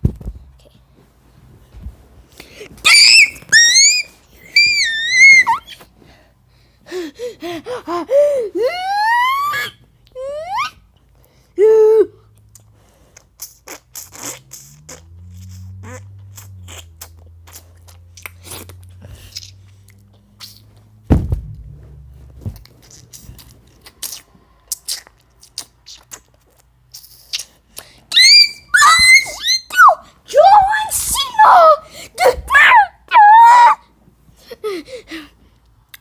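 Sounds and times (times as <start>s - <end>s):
low hum: 20.9s - 23.6s
loud thump: 21.0s - 22.7s.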